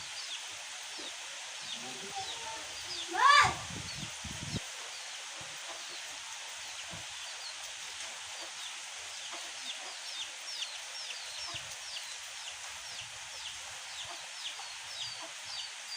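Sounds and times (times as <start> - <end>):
steady hiss: 0.0 - 15.9
chicks peeping: 9.2 - 12.1, 12.8 - 15.7.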